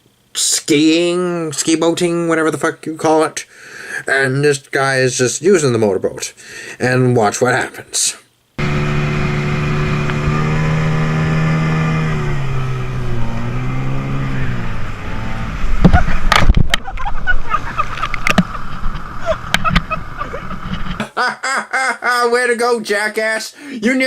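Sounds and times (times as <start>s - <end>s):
motorboat engine running: 8.6s - 16.4s.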